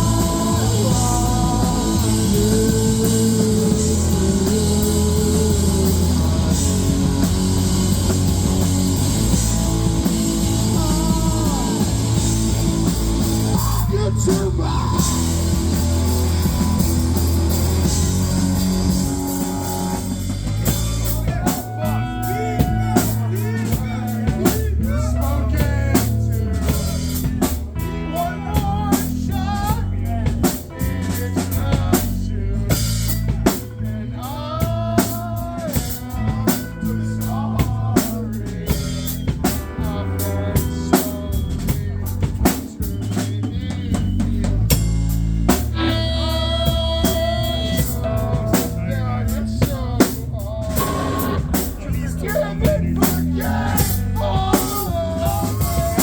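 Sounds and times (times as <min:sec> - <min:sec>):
live rock band playing: 0:00.0 - 0:56.0
bass drum and snare hits: 0:49.6 - 0:56.0.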